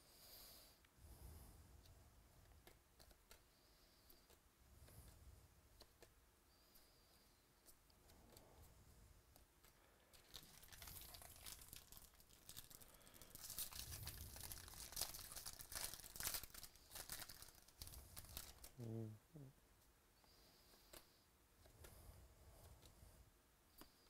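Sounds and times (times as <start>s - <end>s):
foil pack tearing and crinkling: 10.2s - 18.7s.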